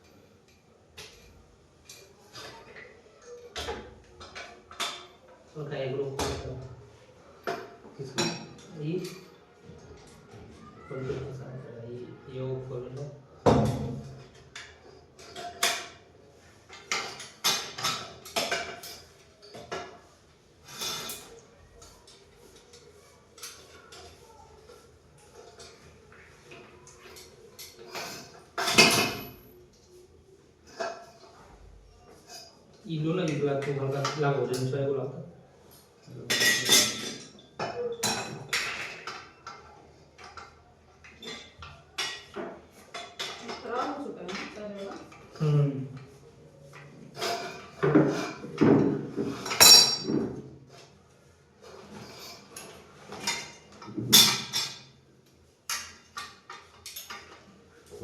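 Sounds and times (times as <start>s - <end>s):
metal tools clinking: 49.4s - 50.2s.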